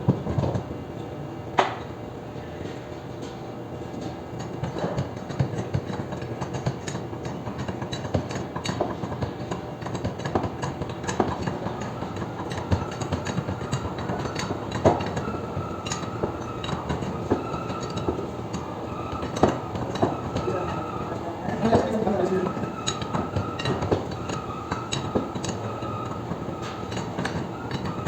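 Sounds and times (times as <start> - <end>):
roller coaster rolling on steel track: 4.4 - 28.0
steady whine: 10.8 - 28.0.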